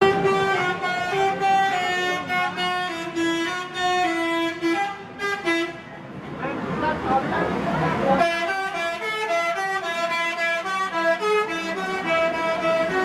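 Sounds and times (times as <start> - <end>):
musical bus horn tune: 0.0 - 6.0.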